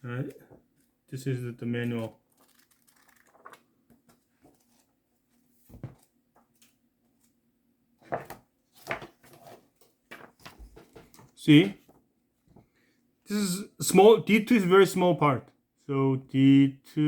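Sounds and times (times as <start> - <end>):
paper rustling: 1.8 - 7.3, 8.0 - 12.0.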